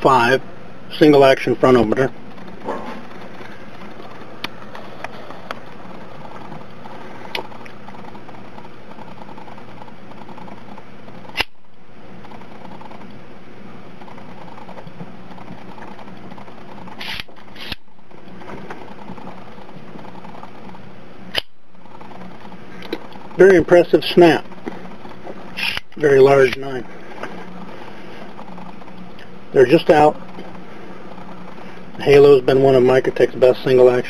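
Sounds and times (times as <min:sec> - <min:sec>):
steady low hum: 0:00.0 - 0:34.0.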